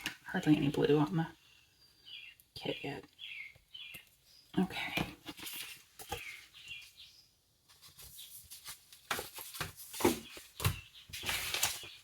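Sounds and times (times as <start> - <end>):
paper rustling: 5.2 - 6.9, 7.6 - 12.0.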